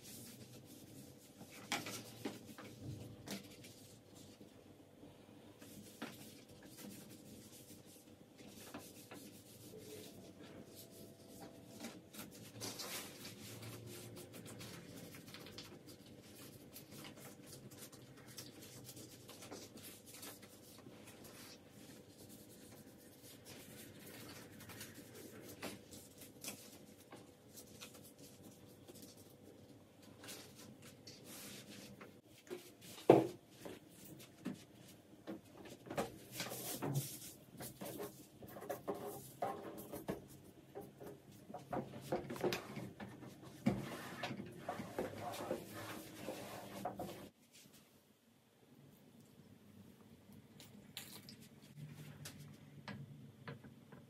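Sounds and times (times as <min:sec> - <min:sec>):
soft rubbing and scraping: 0:35.7 - 0:48.0.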